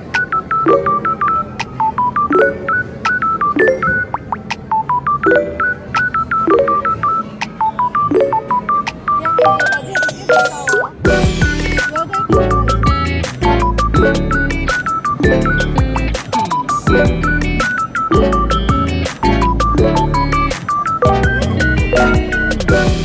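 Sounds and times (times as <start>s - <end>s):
electronic beeping tune: 0.0s - 23.0s
sweeping electronic sounds: 9.2s - 12.9s.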